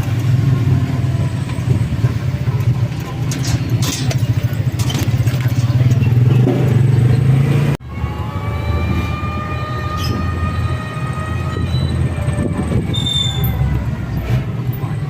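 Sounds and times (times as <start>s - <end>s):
vehicle low rumble: 0.0s - 15.0s
high whining tones: 7.8s - 15.0s.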